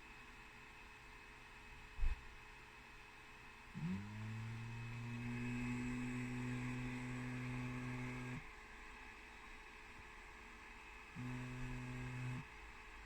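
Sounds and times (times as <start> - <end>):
stepper motor humming: 3.8 - 8.4, 11.2 - 12.5.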